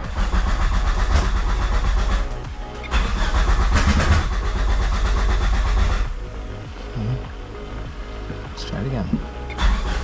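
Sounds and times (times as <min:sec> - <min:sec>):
starter motor cranking engine: 0:00.0 - 0:06.2, 0:09.5 - 0:10.0.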